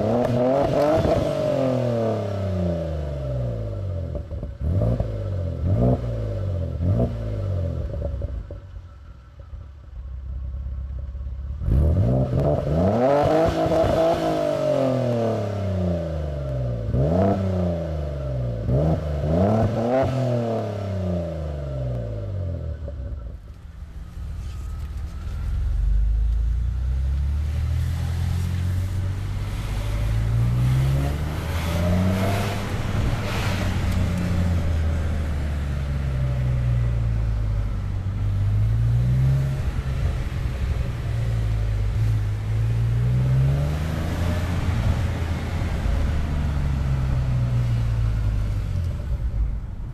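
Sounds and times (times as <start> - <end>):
car engine revving: 0.0 - 8.7, 10.4 - 49.9
car engine idling: 3.5 - 12.1, 21.6 - 43.2, 44.2 - 49.9.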